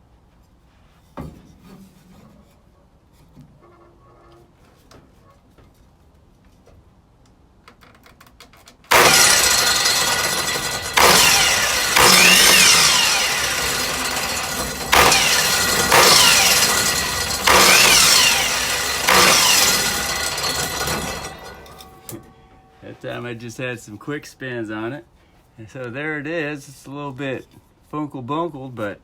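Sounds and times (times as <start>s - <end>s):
electric miter saw spinning: 8.9s - 22.4s.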